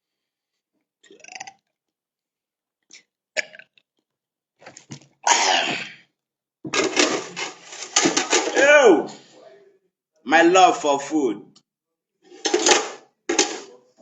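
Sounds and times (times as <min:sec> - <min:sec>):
man coughing: 0:05.3 - 0:05.9.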